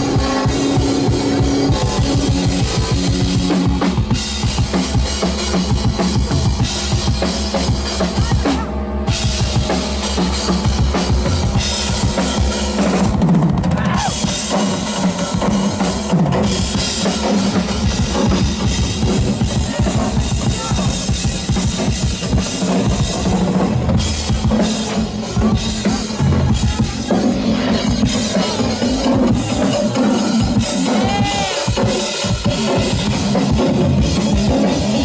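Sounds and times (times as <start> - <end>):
low synthesizer drone: 0.0 - 4.3
drum kit played fast: 0.0 - 35.0.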